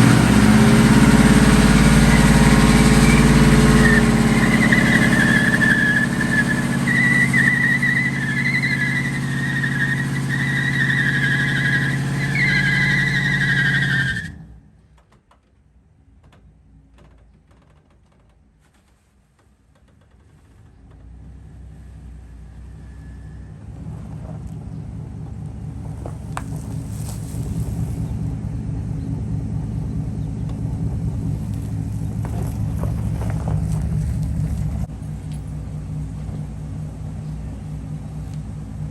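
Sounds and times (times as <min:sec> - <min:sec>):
car engine revving high: 0:00.0 - 0:14.2
tyre squeal: 0:01.9 - 0:14.4.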